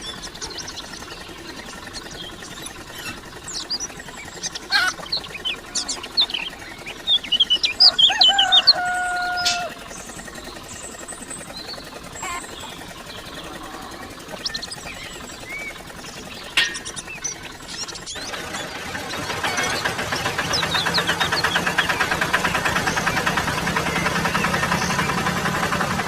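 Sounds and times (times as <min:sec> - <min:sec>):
small birds chirping: 0:00.0 - 0:26.0
rooster crowing: 0:07.8 - 0:09.8.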